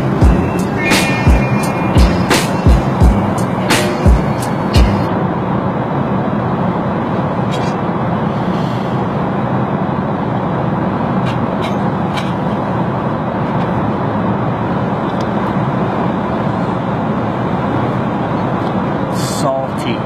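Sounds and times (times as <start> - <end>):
airliner cabin drone: 0.0 - 20.0.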